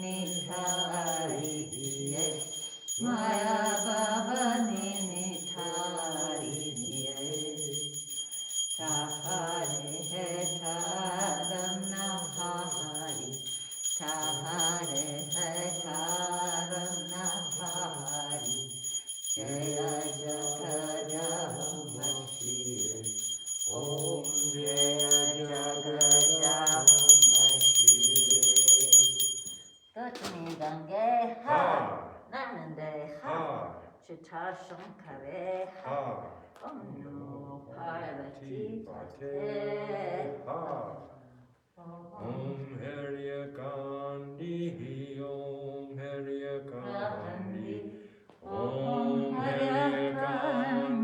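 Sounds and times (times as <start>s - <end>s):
voices singing a chant: 0.0s - 29.5s, 30.4s - 51.0s
small hand bell ringing: 0.0s - 30.0s.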